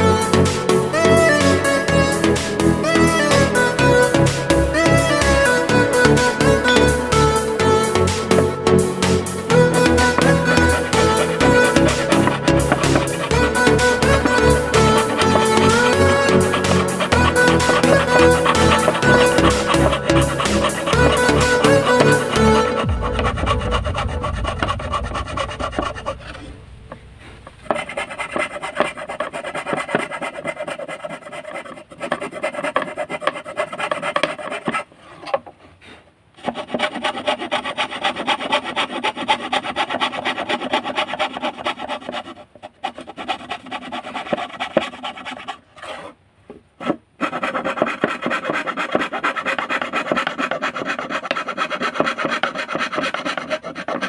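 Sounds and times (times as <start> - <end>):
fretsaw cutting wood: 0.0 - 34.8, 46.8 - 54.0.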